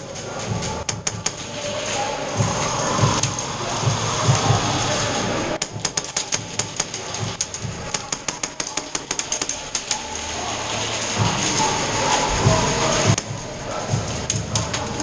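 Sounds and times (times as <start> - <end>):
airsoft gunfire clicking shots: 5.6 - 9.9.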